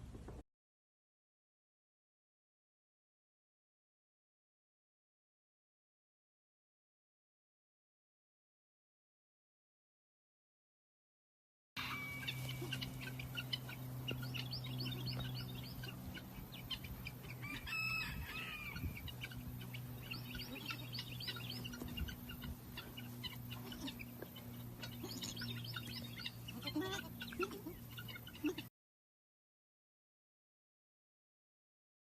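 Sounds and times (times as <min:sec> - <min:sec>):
chicken drawn-out call: 0:11.8 - 0:28.7
chickens peeping: 0:11.8 - 0:28.7
low hum: 0:11.8 - 0:28.7.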